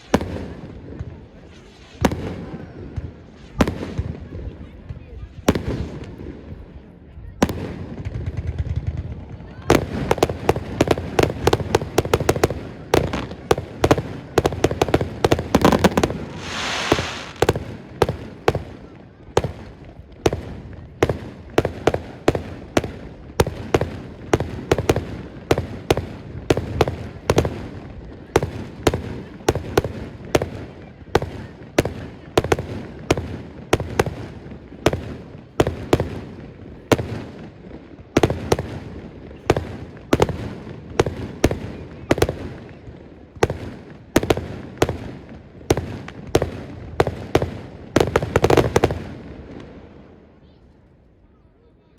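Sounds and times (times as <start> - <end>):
hissing rush: 15.8 - 17.5
fireworks shell bursts: 16.2 - 17.4.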